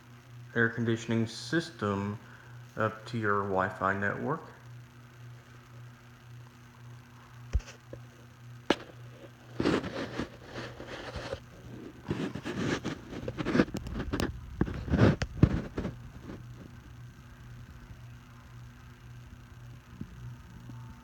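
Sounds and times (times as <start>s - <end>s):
steady low hum: 0.0s - 21.0s
rustling and scraping: 8.7s - 16.9s.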